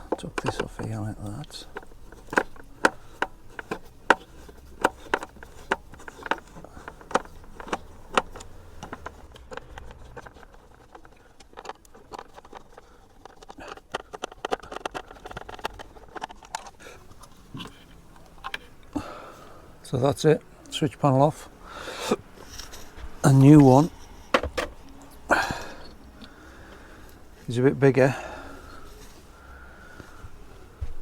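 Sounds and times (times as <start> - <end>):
switch panel clicks and knocks: 24.3 - 24.9.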